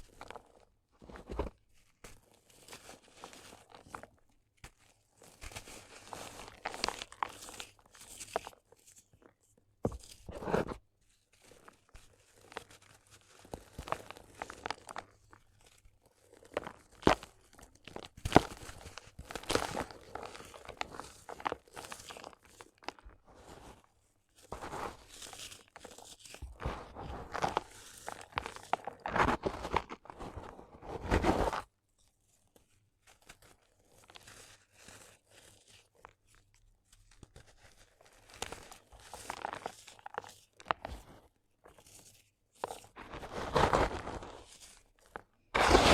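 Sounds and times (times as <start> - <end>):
sand cement crunching: 24.5 - 25.4, 26.6 - 31.6, 43.0 - 44.5, 45.6 - 45.9.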